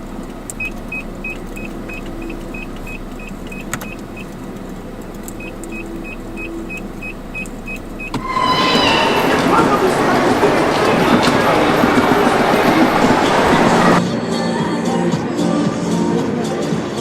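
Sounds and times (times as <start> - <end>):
car cabin road noise: 0.0 - 8.2.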